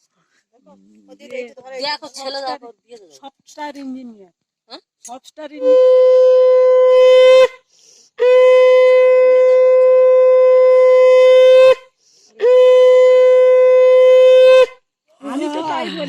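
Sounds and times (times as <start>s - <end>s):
breaths: 0.0s - 0.6s, 7.6s - 8.2s, 11.9s - 12.4s
conch shell blasts: 5.6s - 7.6s, 8.2s - 14.8s.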